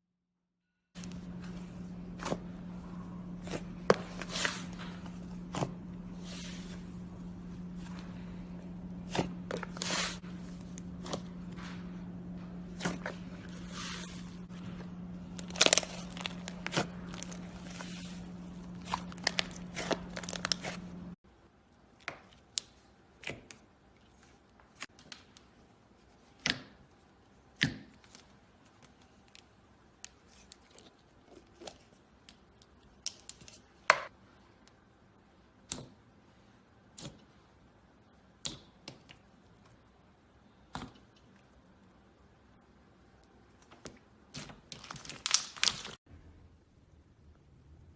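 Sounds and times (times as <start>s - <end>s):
steady low hum: 1.0s - 21.8s
slime crackling and popping: 15.3s - 18.0s, 44.4s - 46.0s.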